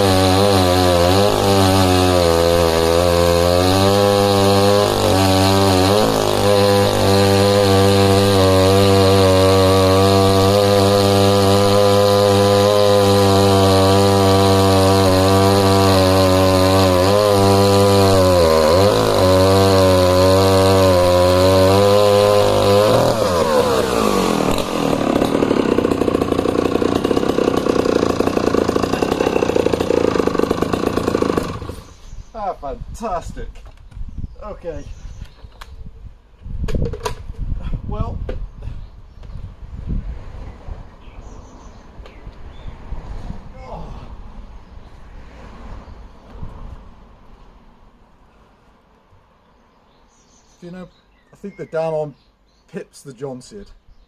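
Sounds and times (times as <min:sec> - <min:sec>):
chainsaw cutting at full throttle: 0:00.0 - 0:32.0.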